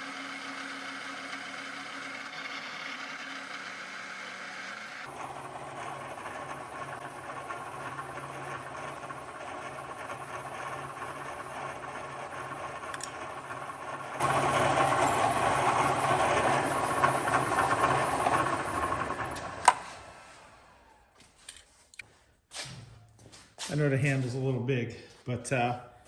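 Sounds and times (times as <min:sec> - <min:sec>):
drill bit cutting metal: 0:00.0 - 0:05.1
drill motor humming: 0:00.0 - 0:19.8.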